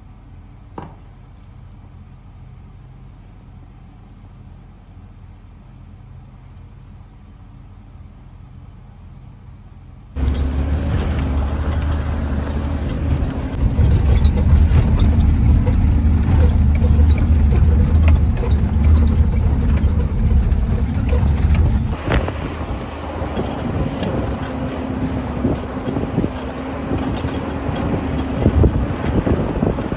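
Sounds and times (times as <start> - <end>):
vehicle engine and road rumble: 0.0 - 29.9.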